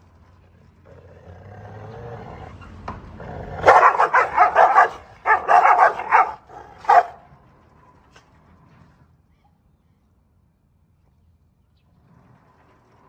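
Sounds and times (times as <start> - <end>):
dog growling: 0.8 - 2.6, 3.2 - 7.1
dog barking aggressively: 3.3 - 7.3.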